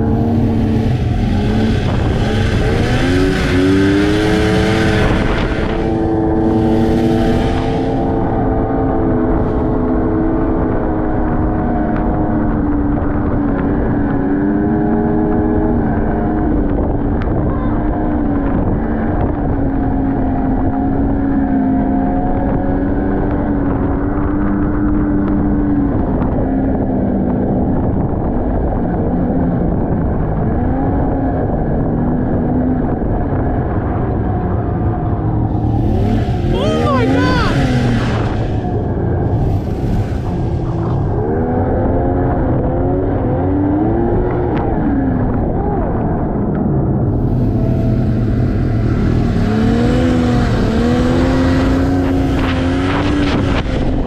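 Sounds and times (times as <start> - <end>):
snowmobile engine running: 0.0 - 16.2, 33.7 - 44.6, 45.7 - 54.0
wind rushing on microphone: 0.0 - 54.0.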